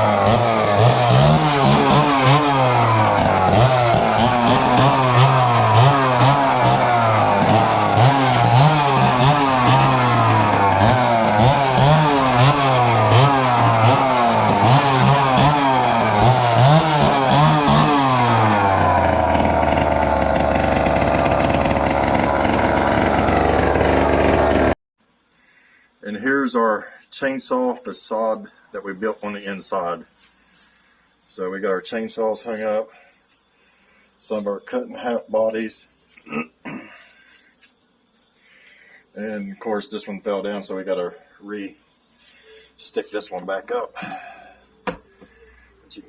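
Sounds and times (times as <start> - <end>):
chainsaw revving and idling: 0.0 - 24.8.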